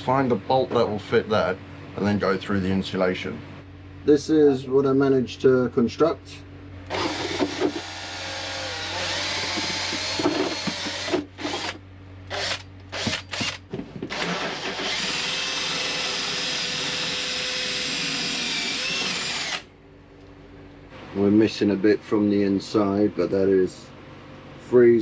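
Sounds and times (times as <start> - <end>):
electric drill boring: 6.9 - 19.7.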